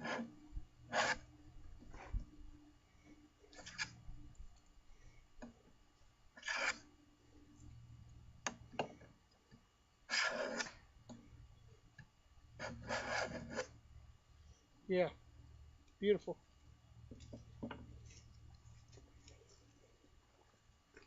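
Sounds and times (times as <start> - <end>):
block plane scraping wood: 0.0 - 0.3, 0.9 - 1.2, 6.4 - 6.8, 10.1 - 10.8, 12.6 - 13.8.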